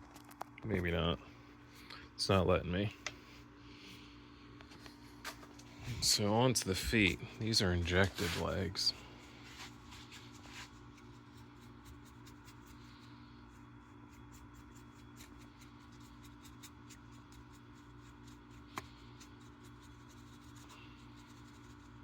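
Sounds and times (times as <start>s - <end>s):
steady low hum: 0.0s - 22.0s
light brushing and scratching: 5.0s - 22.0s.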